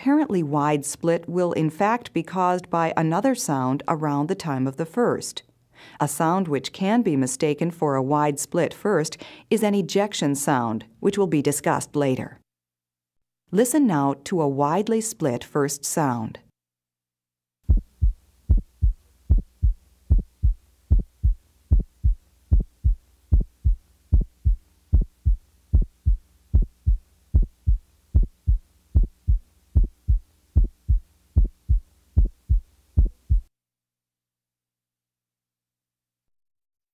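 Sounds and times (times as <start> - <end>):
heartbeat through stethoscope: 17.6 - 33.5.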